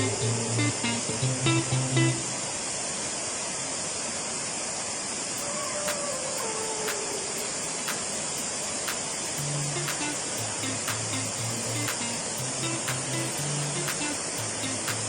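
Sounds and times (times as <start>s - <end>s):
waterfall rushing: 5.2s - 15.0s
faint ticks: 5.8s - 15.0s.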